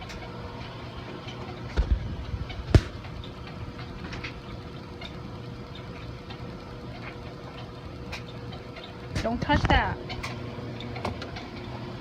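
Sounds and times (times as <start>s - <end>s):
washing machine humming: 0.0s - 12.0s.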